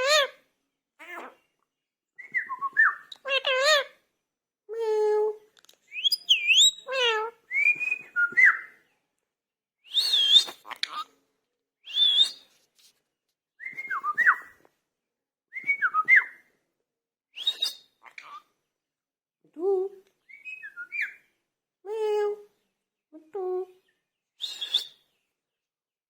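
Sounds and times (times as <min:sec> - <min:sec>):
parrot whistling and chirping: 0:02.2 - 0:03.8, 0:05.9 - 0:08.7, 0:09.9 - 0:11.0, 0:11.8 - 0:12.4, 0:13.6 - 0:14.5, 0:17.4 - 0:18.4, 0:20.3 - 0:21.2, 0:24.4 - 0:25.0.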